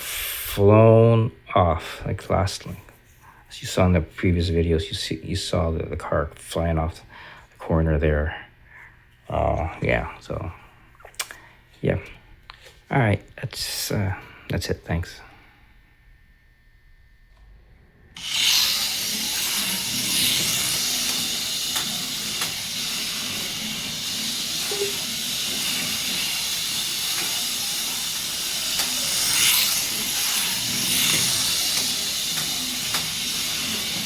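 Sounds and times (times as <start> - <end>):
slot car motor whirring: 18.2 - 34.0.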